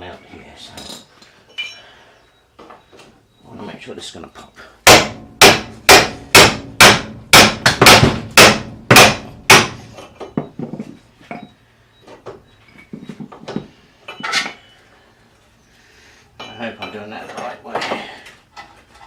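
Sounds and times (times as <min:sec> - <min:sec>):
tools clinking: 0:00.8 - 0:01.9, 0:12.7 - 0:14.7
hammer striking metal: 0:04.8 - 0:10.3.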